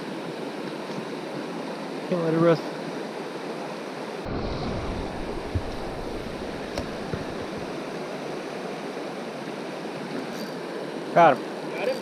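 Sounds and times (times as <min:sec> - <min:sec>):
river rushing over rocks: 0:00.0 - 0:11.7
wind rumble on microphone: 0:04.2 - 0:07.9.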